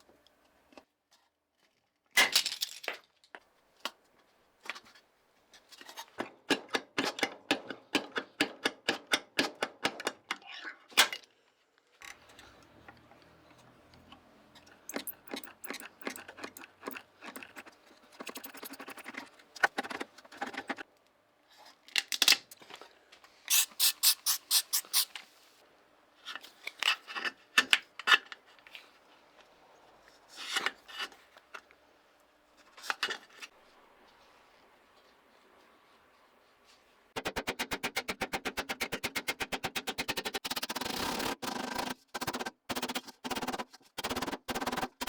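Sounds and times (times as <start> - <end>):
hand tool scraping strokes: 37.2 - 45.0.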